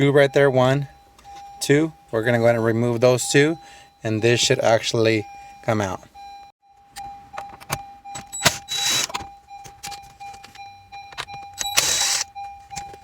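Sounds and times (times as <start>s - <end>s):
power tool whirring: 8.4s - 9.2s, 11.6s - 12.3s.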